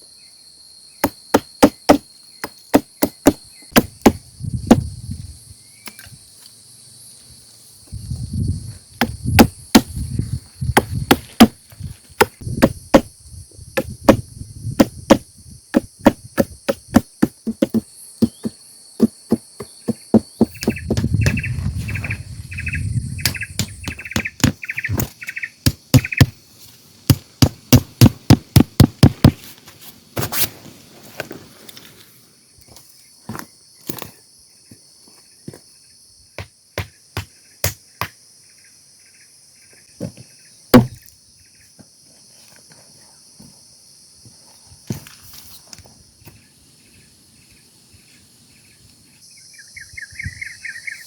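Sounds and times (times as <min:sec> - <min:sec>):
high insect drone: 0:00.0 - 0:29.7, 0:31.0 - 0:51.0
sharp knocks of blows: 0:01.0 - 0:02.0, 0:02.7 - 0:04.9, 0:23.2 - 0:26.4, 0:27.1 - 0:29.4, 0:40.8 - 0:41.0
quick chirps: 0:19.3 - 0:26.4.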